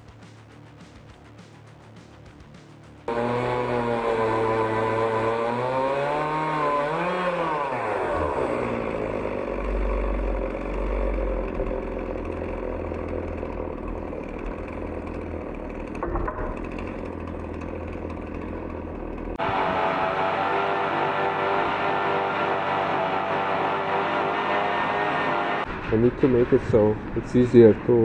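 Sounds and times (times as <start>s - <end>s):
music: 0.0s - 3.1s
chainsaw cutting log: 3.1s - 25.7s.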